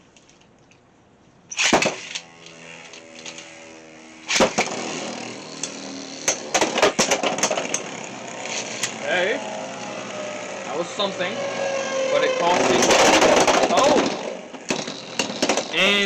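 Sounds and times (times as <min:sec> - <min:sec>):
spinning tops whirring: 0:01.5 - 0:10.7.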